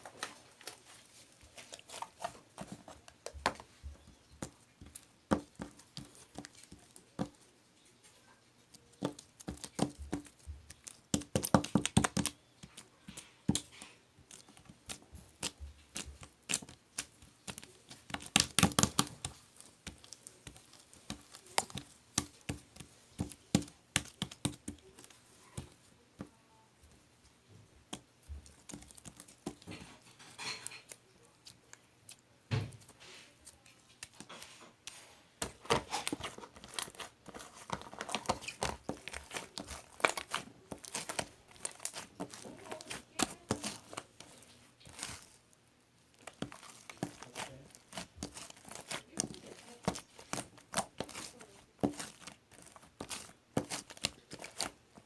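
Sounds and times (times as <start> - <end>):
crinkling and tearing: 0.0 - 3.7, 8.7 - 25.8, 32.8 - 55.0.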